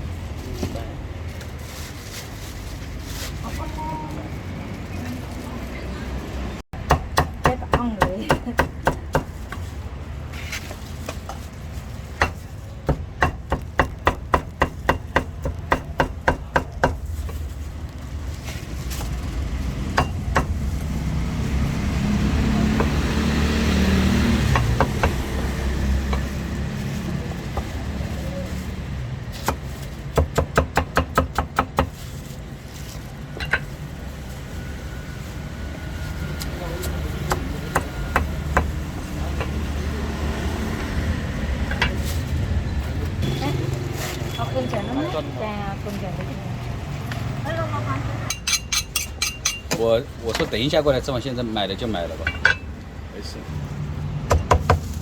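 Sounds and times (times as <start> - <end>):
cleaver chopping meat: 12.2 - 17.0, 37.2 - 38.8.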